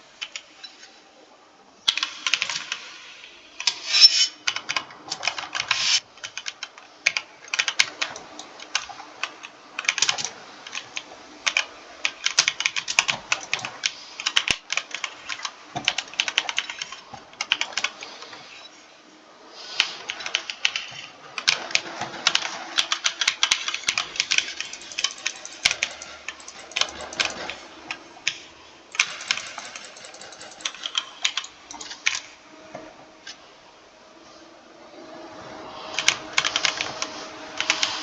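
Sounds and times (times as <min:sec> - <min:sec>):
computer keyboard typing: 0:01.9 - 0:02.9, 0:04.4 - 0:18.4, 0:19.8 - 0:32.3, 0:35.9 - 0:38.0.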